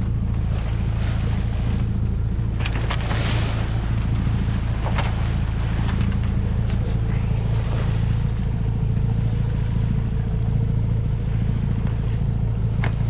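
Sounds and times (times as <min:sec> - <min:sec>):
boat engine running: 0:00.0 - 0:13.0
water splashing along hull: 0:00.0 - 0:13.0.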